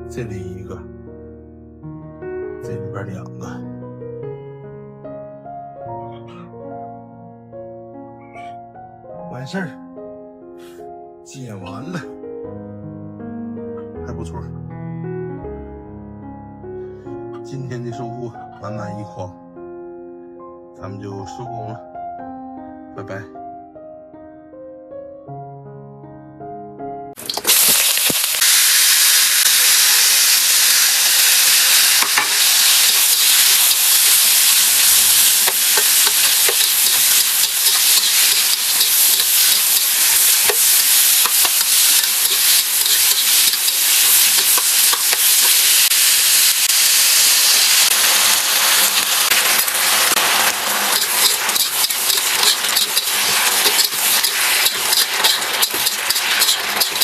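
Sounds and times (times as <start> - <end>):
food sizzling in a hot pan: 27.2 - 57.0
stirring clicks: 35.4 - 45.6, 48.8 - 57.0.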